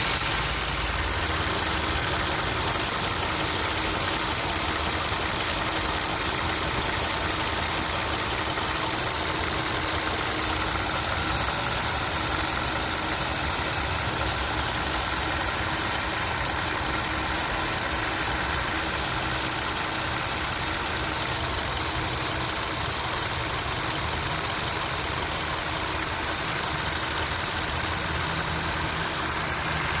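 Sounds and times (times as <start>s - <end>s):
engine idling: 0.0s - 30.0s
engine ticking: 0.0s - 30.0s.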